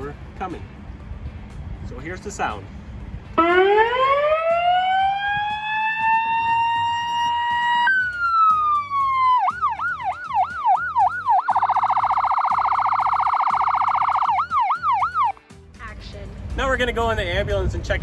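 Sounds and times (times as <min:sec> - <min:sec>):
ambulance siren: 0:03.4 - 0:15.4.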